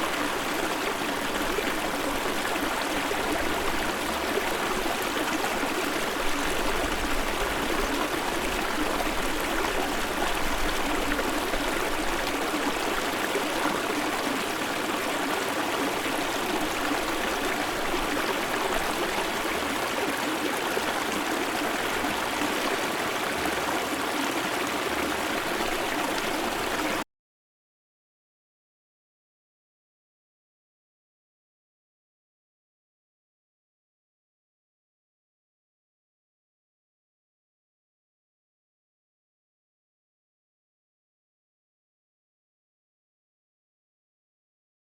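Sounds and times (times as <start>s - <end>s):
shallow stream trickling: 0.0s - 27.0s.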